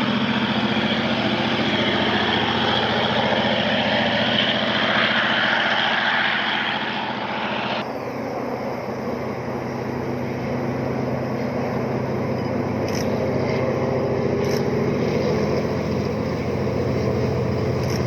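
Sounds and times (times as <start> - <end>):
bright rushing sound: 0.0 - 7.8
model locomotive engine drone: 0.0 - 18.0.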